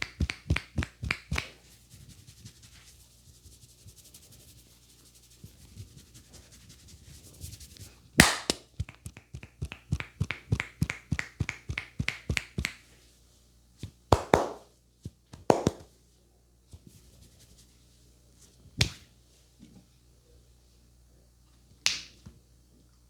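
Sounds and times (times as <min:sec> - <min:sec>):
loud slaps: 0:00.0 - 0:01.5, 0:08.2 - 0:12.8, 0:14.2 - 0:14.7, 0:15.4 - 0:15.9
chopping and slapping massage strokes: 0:00.0 - 0:01.6, 0:08.2 - 0:12.8, 0:13.8 - 0:14.7, 0:15.3 - 0:15.9
hands rubbing a head: 0:00.0 - 0:07.9, 0:08.8 - 0:12.8.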